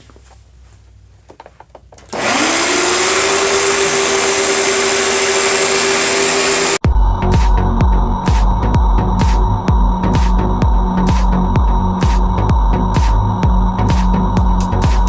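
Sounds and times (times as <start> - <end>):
vacuum cleaner motor whining: 2.1 - 6.8.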